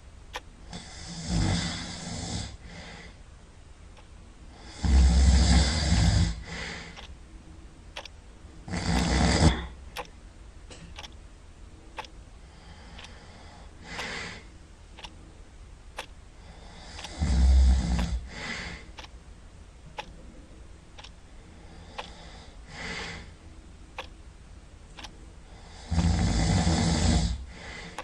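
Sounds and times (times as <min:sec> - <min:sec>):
person snoring loudly: 0:00.7 - 0:02.5, 0:04.6 - 0:06.6, 0:08.7 - 0:09.7, 0:25.8 - 0:27.4
faint sharp tick: 0:12.0 - 0:12.2.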